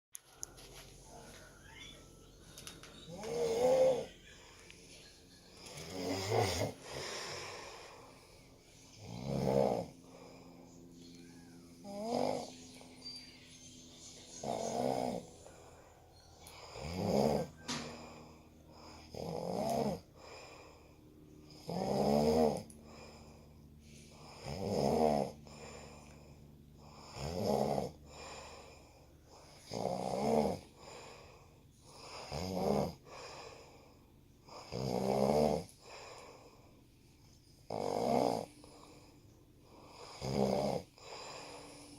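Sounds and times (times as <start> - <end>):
loud rattling snore: 3.1 - 4.1, 5.6 - 7.8, 8.9 - 10.4, 11.8 - 12.8, 14.4 - 15.5, 16.6 - 20.5, 21.5 - 23.4, 24.1 - 25.9, 26.8 - 28.4, 29.3 - 31.2, 31.9 - 33.4, 34.6 - 36.0, 37.7 - 39.0, 39.9 - 41.8.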